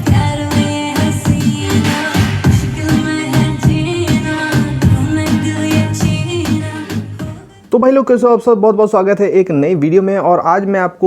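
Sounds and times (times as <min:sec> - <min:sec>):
steady drum beat: 0:00.0 - 0:07.5.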